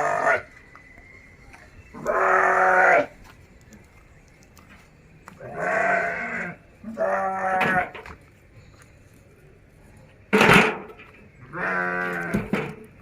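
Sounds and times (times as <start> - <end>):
goats bleating: 2.0 - 3.1, 5.4 - 7.9, 11.5 - 12.4.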